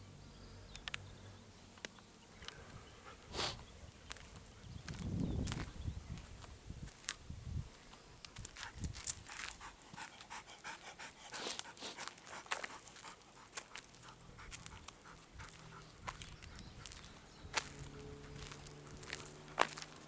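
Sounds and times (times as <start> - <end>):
dog panting: 2.6 - 4.8, 8.6 - 20.0.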